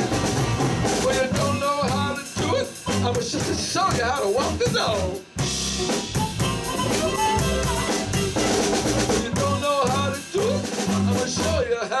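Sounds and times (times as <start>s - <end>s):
person singing: 0.0s - 5.2s, 6.1s - 12.0s
electric bass: 0.0s - 11.6s
blues band playing: 0.0s - 11.7s
drum kit with rimshots: 0.0s - 11.9s
melodic lead line: 5.4s - 10.7s.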